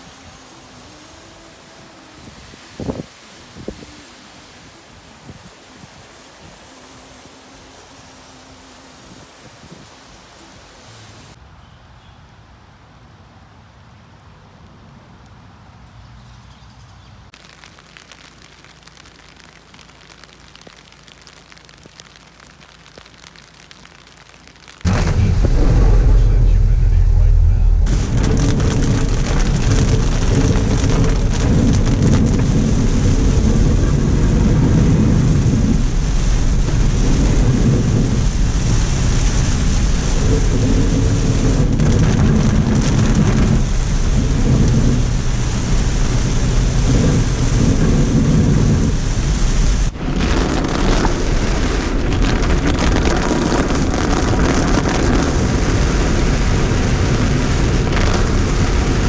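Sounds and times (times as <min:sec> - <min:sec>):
heavy rain: 0:00.0 - 0:11.4, 0:17.3 - 0:59.0
low rumble: 0:24.8 - 0:59.0.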